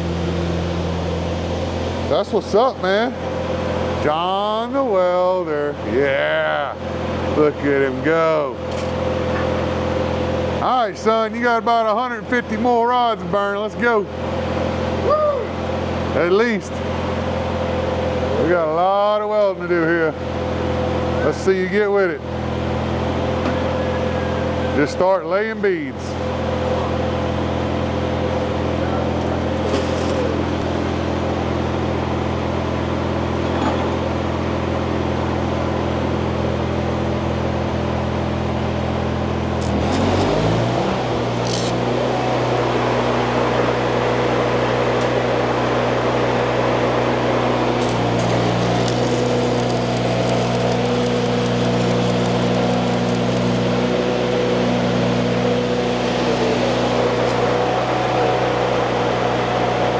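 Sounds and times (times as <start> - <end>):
welding arc hiss and crackle: 39.6 - 41.8, 47.8 - 53.6
welding machine hum: 39.6 - 42.1, 47.8 - 53.7.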